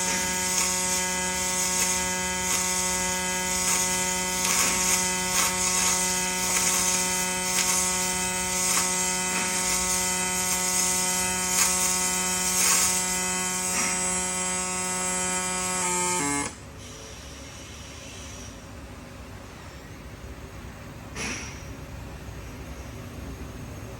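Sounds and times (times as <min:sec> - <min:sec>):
welding arc buzzing and crackling: 0:00.0 - 0:16.6.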